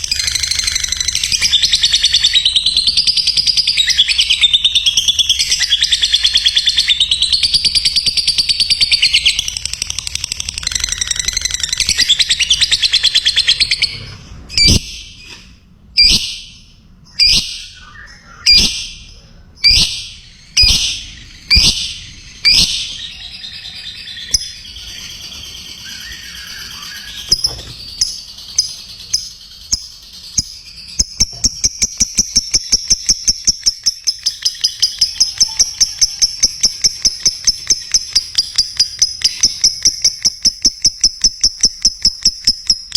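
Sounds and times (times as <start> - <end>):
lovebird shrill calls: 16.0 - 19.0, 19.6 - 42.9
lovebird chattering trill: 16.0 - 42.9.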